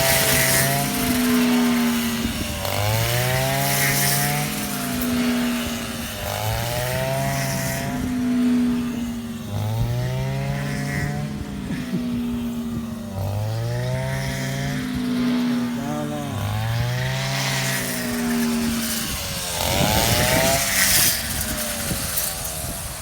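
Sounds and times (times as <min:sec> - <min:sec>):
harvester engine under load: 0:00.0 - 0:12.3.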